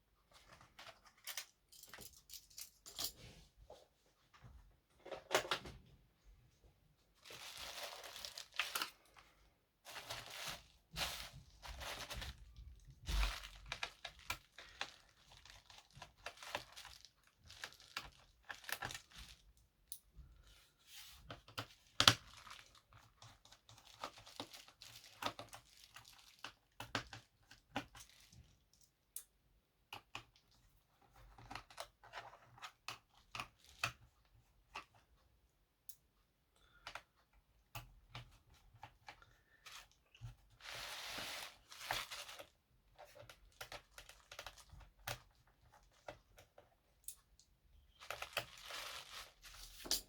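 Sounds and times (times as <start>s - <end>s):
packaging crinkling and tearing: 7.2s - 9.2s, 9.9s - 19.4s, 21.9s - 27.2s, 40.6s - 46.1s, 47.9s - 49.9s.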